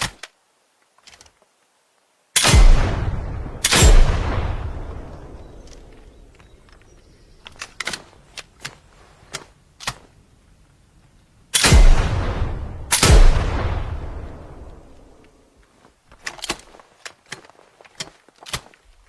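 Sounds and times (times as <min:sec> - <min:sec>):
shotgun shots: 0:02.4 - 0:05.1, 0:11.6 - 0:14.6.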